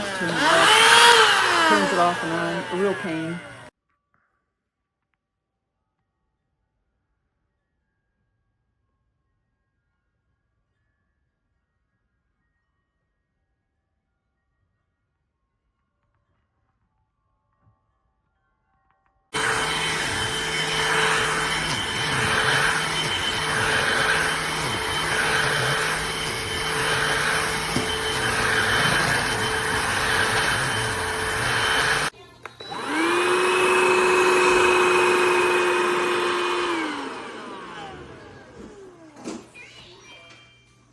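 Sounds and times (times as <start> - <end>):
handheld vacuum running: 0.0 - 3.7, 19.4 - 39.6.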